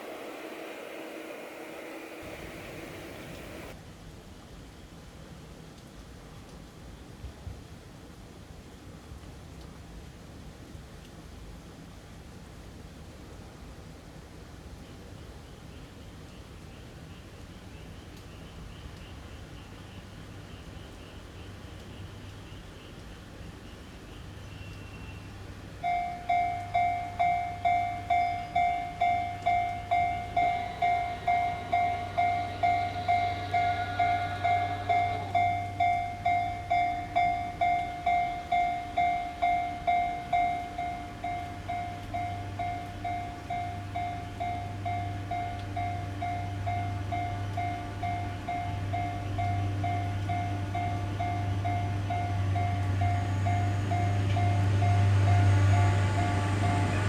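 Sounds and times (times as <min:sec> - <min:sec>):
low engine drone: 0:00.0 - 0:03.8, 0:26.0 - 0:57.0
level crossing electronic bell: 0:25.8 - 0:56.9.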